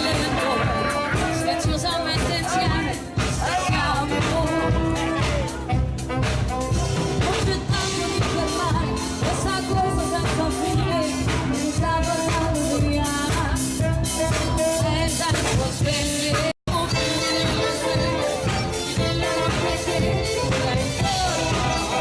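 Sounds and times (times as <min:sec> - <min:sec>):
person singing: 0:00.0 - 0:05.8, 0:06.7 - 0:22.0
live band playing pop song: 0:00.0 - 0:22.0.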